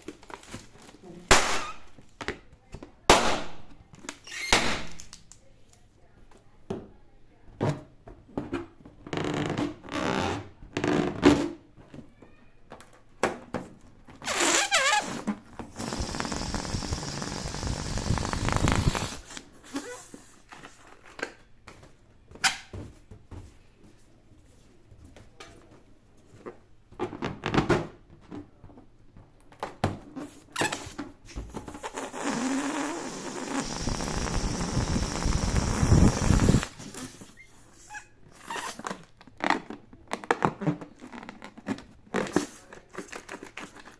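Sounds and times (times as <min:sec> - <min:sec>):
balloons popping: 0:01.3 - 0:02.0, 0:14.3 - 0:19.4, 0:31.5 - 0:37.5
steady hiss: 0:15.8 - 0:19.2, 0:32.1 - 0:37.3.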